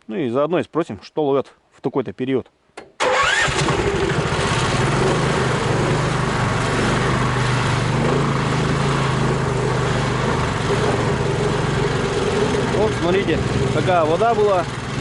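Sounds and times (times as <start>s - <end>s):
vehicle engine running: 3.4s - 15.0s.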